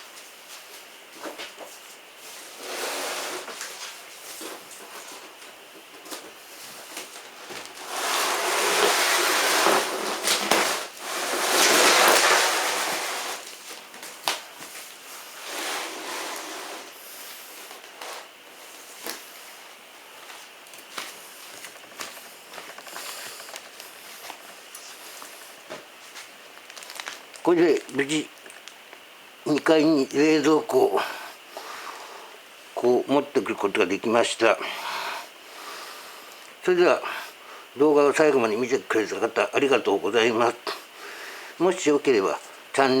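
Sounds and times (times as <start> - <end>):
refrigerator scraping: 2.2 - 5.4, 7.3 - 13.8, 15.4 - 17.0.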